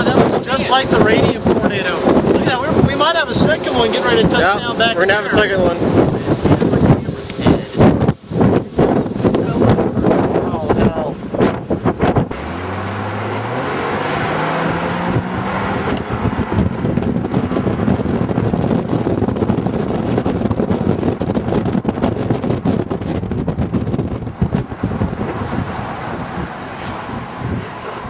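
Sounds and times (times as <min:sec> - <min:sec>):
road and wind noise: 0:00.0 - 0:28.0
car engine accelerating: 0:11.2 - 0:28.0.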